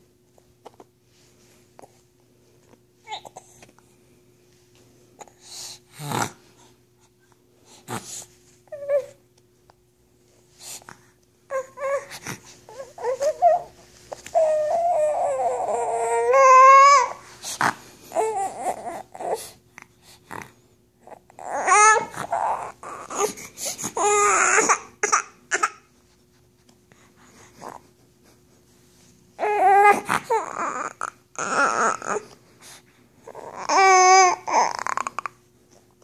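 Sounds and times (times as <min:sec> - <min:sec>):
high-pitched whining cries: 0:11.5 - 0:17.2, 0:24.0 - 0:25.7, 0:29.4 - 0:32.3.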